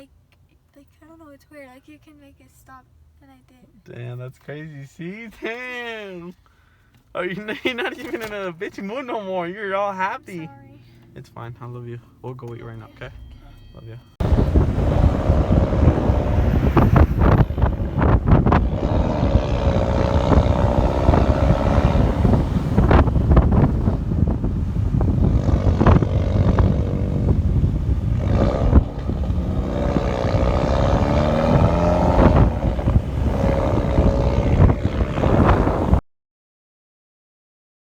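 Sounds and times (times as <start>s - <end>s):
car rumble from inside cabin: 12.4s - 36.0s
wind buffeting microphone: 14.2s - 36.0s.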